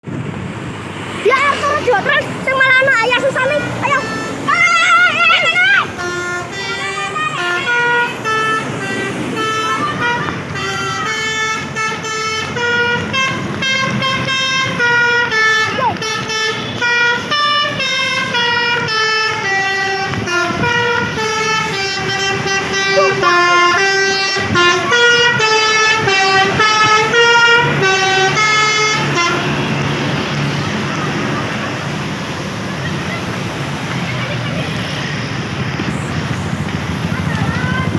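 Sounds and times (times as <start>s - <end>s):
engine noise: 0.0s - 37.9s
musical air horns on a bus: 3.4s - 30.5s.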